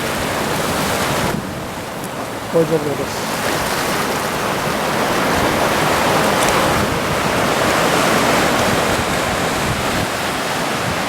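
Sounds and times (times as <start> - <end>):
ocean surf on sandy beach: 0.0 - 11.0.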